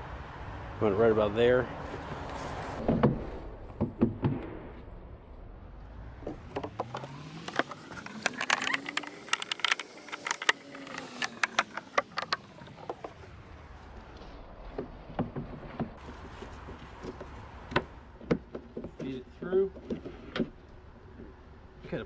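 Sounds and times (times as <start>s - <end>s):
light plastic clicks and knocks: 6.6s - 13.0s.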